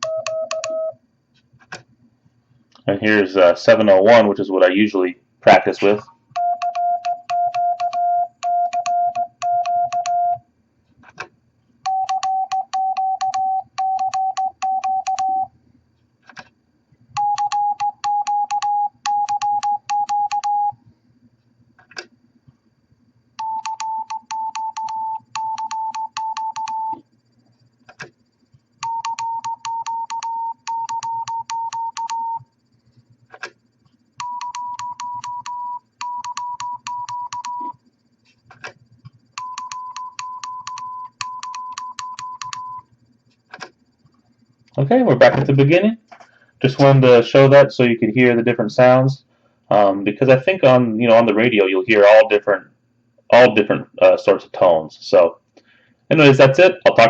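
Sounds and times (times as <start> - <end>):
morse code beeping: 0.0 - 1.0, 6.3 - 10.4, 11.8 - 15.5, 17.2 - 20.8, 23.4 - 27.0, 28.8 - 32.4, 34.2 - 37.8, 39.4 - 42.9
faint low hum: 0.0 - 57.0.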